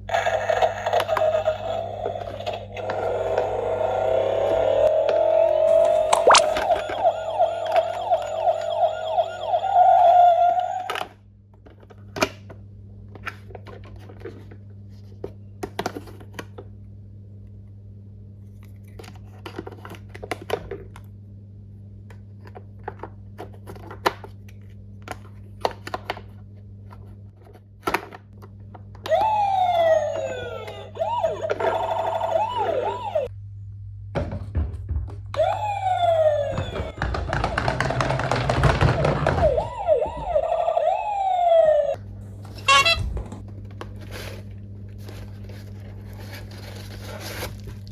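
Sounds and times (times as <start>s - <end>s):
toy electronic siren: 0.1s - 11.2s, 29.0s - 33.3s, 35.4s - 42.0s, 42.6s - 43.2s
toy packaging clicks and rustles: 5.7s - 7.0s, 36.6s - 40.4s.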